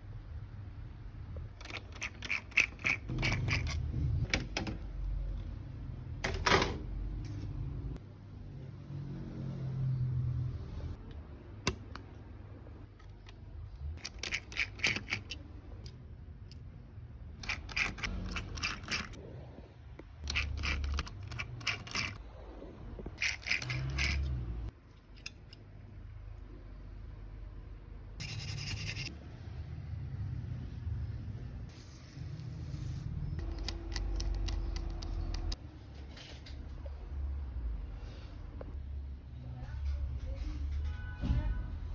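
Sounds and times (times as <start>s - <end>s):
brushing strokes on laptop parts: 28.2s - 29.1s.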